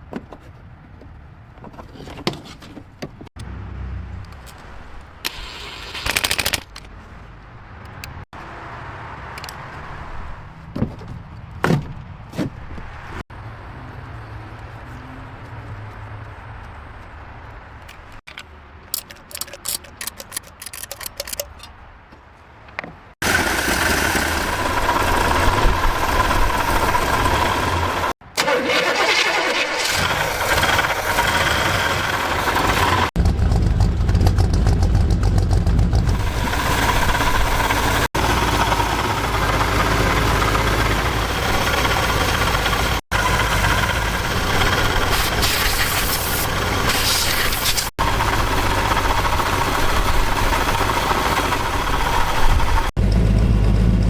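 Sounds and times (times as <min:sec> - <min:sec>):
car engine starting and running: 0:23.2 - 0:54.0.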